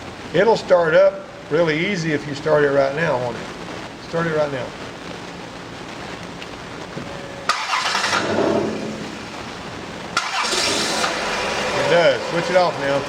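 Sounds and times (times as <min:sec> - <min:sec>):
car engine running: 0:07.0 - 0:13.0
car starter cranking: 0:07.5 - 0:09.2, 0:10.2 - 0:12.5.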